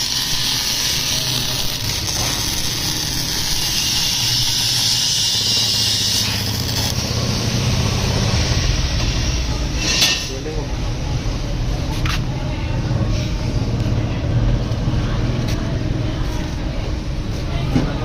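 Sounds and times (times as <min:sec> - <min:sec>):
welding arc hissing: 0:00.0 - 0:11.0.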